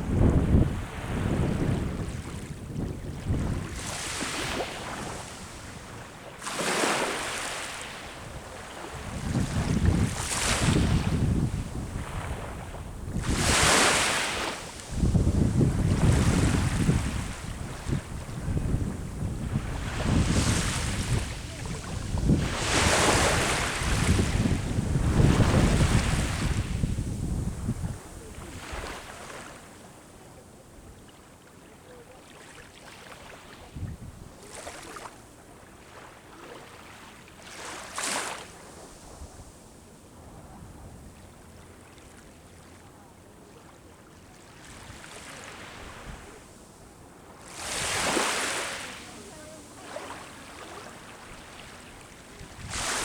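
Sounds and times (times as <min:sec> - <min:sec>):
wind buffeting microphone: 0:00.0 - 0:04.0, 0:08.3 - 0:29.0, 0:52.4 - 0:53.0
sea waves breaking on shore: 0:00.0 - 0:29.9, 0:31.9 - 0:40.6, 0:43.6 - 0:53.0.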